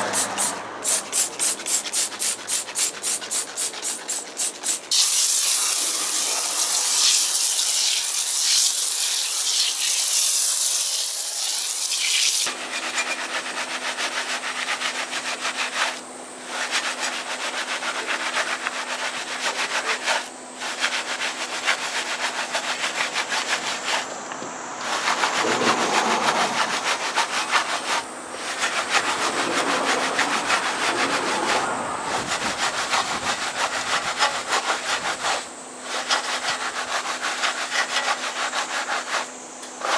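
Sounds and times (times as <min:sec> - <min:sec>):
pressure washer spraying water: 0:00.0 - 0:12.5
stiff brush scrubbing: 0:00.0 - 0:12.5, 0:24.8 - 0:39.9.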